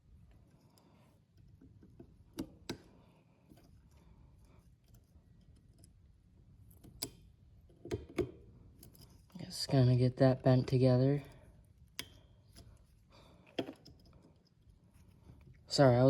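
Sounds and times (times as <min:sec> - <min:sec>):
sharp metal clicks and taps: 0:11.9 - 0:12.7.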